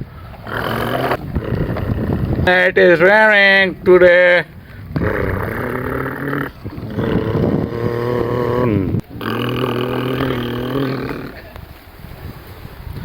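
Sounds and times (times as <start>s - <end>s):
low-pitched animal calls: 0.4s - 2.6s, 4.7s - 11.4s.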